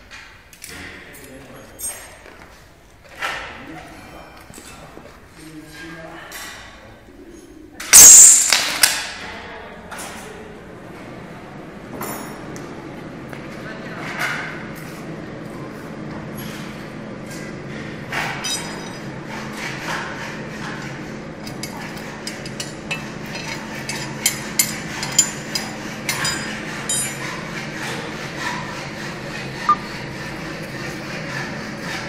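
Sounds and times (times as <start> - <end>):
metal parts clinking: 18.4 - 19.1, 21.4 - 27.3.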